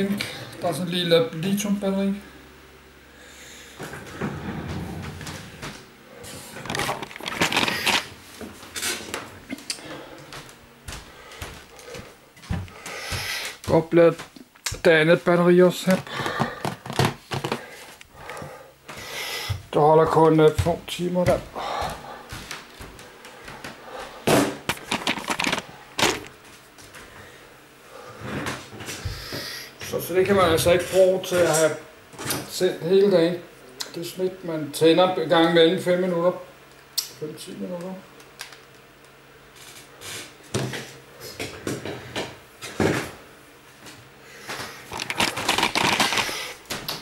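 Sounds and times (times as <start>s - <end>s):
small objects rustling and clicking: 6.5s - 8.1s, 24.7s - 26.3s, 44.9s - 47.0s.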